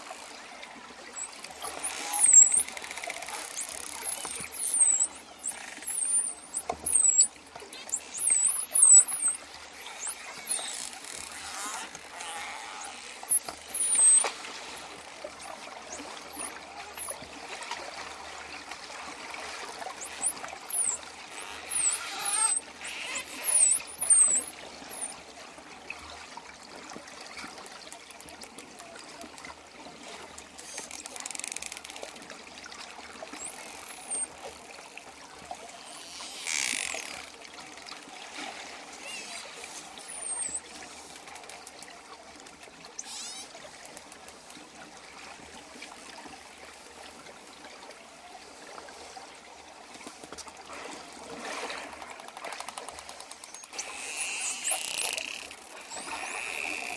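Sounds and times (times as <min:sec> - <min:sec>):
moving water: 0:00.0 - 0:56.9
dolphins whistling: 0:01.2 - 0:17.2, 0:20.0 - 0:25.2, 0:33.4 - 0:34.4, 0:38.9 - 0:40.7, 0:43.0 - 0:43.5, 0:53.7 - 0:56.9.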